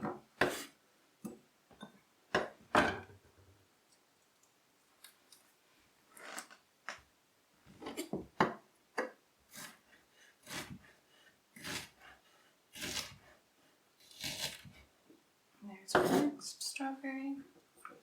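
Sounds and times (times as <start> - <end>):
knife slicing a strawberry: 12.8 - 13.2.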